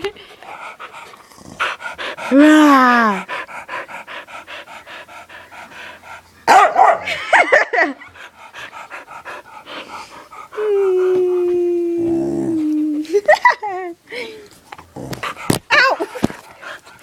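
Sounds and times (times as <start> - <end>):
dog panting: 0.0 - 11.4, 14.8 - 17.0
dog barking and yipping: 6.5 - 7.2
dog whining: 10.5 - 13.1.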